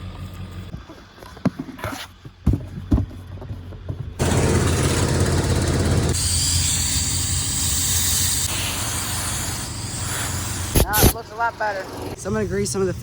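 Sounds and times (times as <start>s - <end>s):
compressed air rush: 6.1s - 11.2s.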